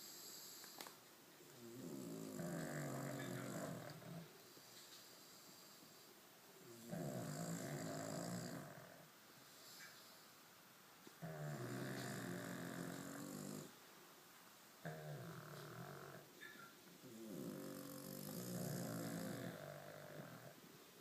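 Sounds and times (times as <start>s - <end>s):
dog snoring: 1.6s - 4.3s, 5.2s - 10.1s, 11.2s - 13.8s, 14.8s - 20.6s.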